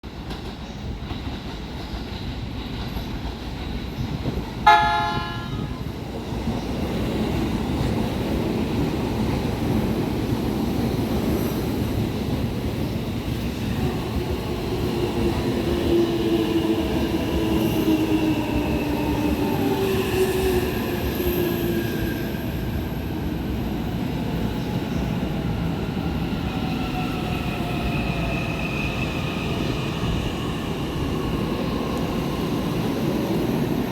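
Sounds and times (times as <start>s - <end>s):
train rumbling: 0.0s - 33.9s
train horn blast: 4.7s - 5.9s
train whine falling in pitch: 4.7s - 6.0s.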